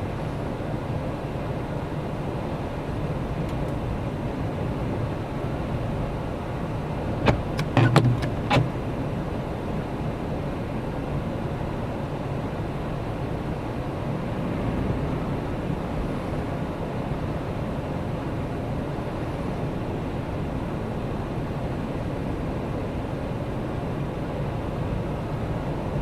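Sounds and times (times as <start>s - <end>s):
sharp clicks and knocks: 7.2s - 8.8s.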